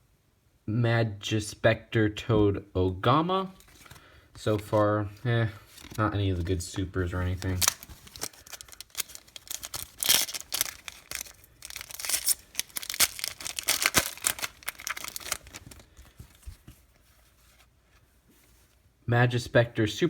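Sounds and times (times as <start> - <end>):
foil wrapper tearing and crinkling: 7.0 - 16.0.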